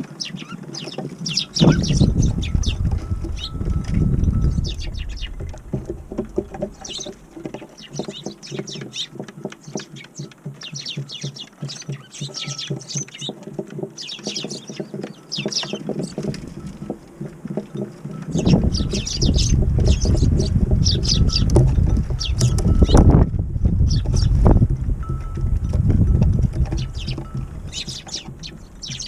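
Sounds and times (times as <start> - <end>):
sparrows chirping: 0.0 - 29.0
low wind rumble: 1.3 - 7.4, 18.1 - 29.0.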